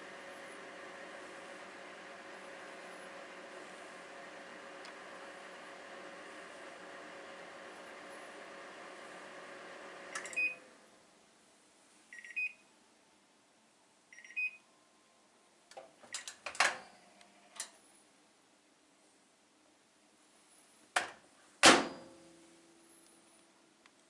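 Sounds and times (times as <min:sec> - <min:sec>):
microwave oven humming: 0:00.0 - 0:11.1.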